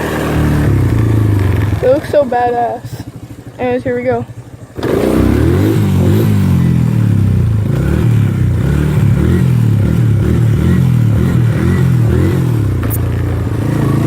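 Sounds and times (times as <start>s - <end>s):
off-road vehicle engine revving: 0.0s - 14.0s.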